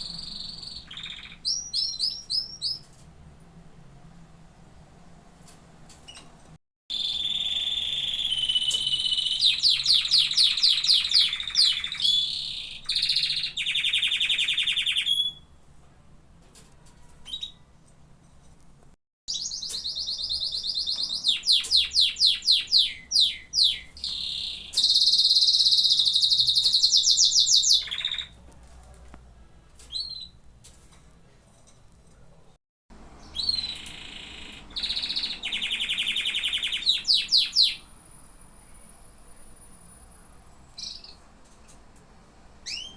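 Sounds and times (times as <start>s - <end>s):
canary singing: 0.0s - 2.9s, 6.9s - 15.6s, 19.3s - 28.4s, 33.1s - 41.2s, 42.6s - 42.9s
faint bird chirps: 0.0s - 2.9s, 6.9s - 15.6s, 19.3s - 28.4s, 33.2s - 41.3s.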